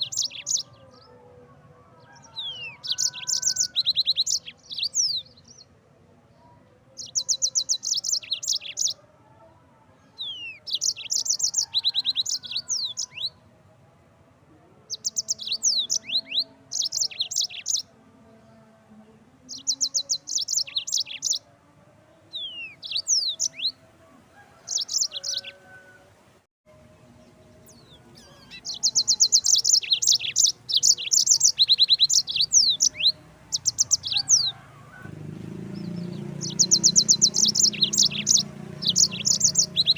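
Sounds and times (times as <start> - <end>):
canary singing trills and whistles: 0.0 - 1.1, 2.0 - 5.7, 7.0 - 9.0, 10.2 - 13.4, 14.9 - 17.9, 19.5 - 21.5, 22.3 - 23.8, 24.6 - 25.7, 27.6 - 34.7, 35.7 - 39.9.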